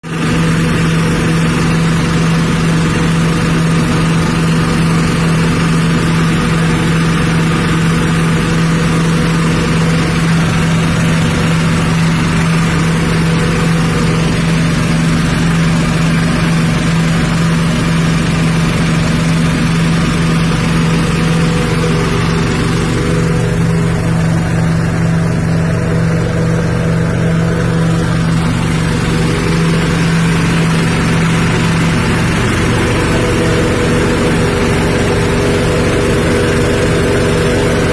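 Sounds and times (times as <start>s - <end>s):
grinding machine engine whirring: 0.0s - 37.9s.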